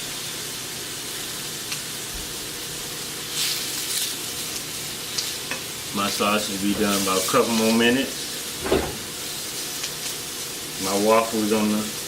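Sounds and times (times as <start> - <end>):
sausage patties sizzling in a pan: 0.0 - 12.0.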